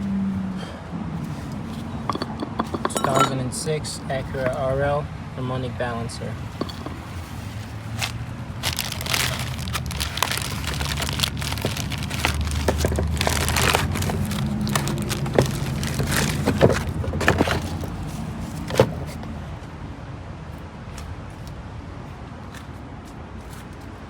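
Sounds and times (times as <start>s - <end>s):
car engine humming: 6.1s - 19.6s.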